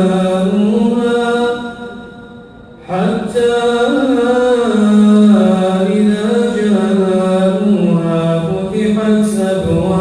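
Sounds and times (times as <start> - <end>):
man reciting melodically: 0.0 - 10.0.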